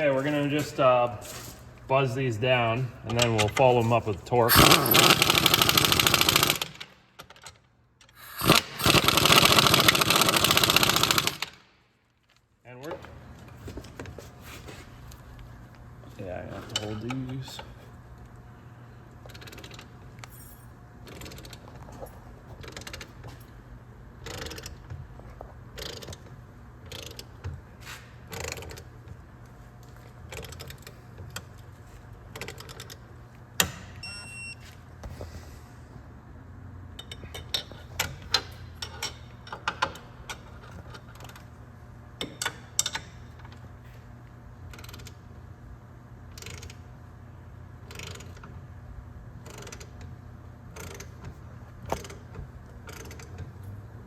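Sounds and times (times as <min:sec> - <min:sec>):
ratchet wrench clicking: 0:04.5 - 0:06.9, 0:08.1 - 0:11.6.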